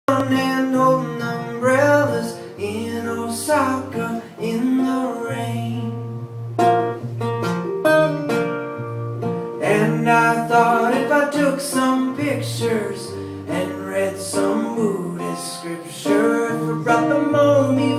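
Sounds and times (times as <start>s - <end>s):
person singing: 0.1s - 6.1s, 9.6s - 17.9s
acoustic guitar playing: 0.1s - 17.9s.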